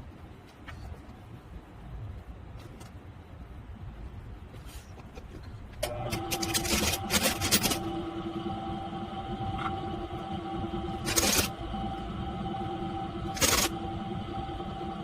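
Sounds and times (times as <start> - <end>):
machine motor humming: 5.8 - 15.0.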